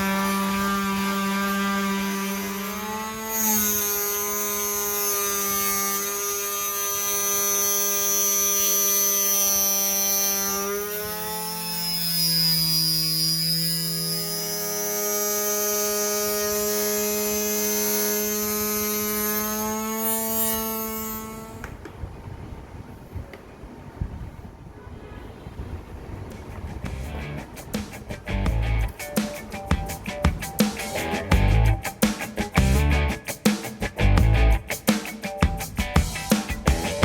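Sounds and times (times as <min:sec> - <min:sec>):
small motor high whine: 0:00.0 - 0:22.0.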